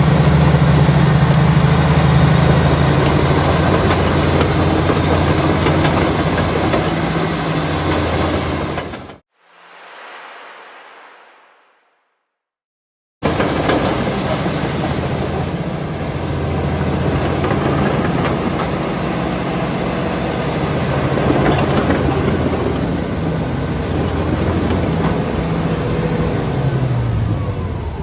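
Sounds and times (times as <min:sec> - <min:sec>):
bulldozer diesel engine running: 0:00.0 - 0:08.9, 0:14.2 - 0:26.4.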